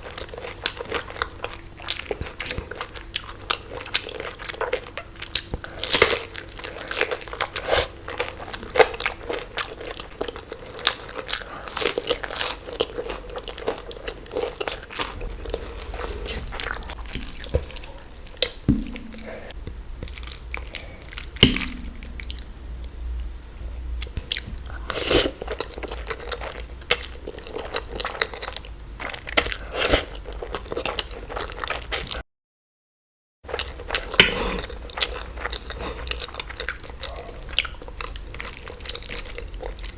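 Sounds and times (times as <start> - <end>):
crunchy chewing: 0.0 - 23.0.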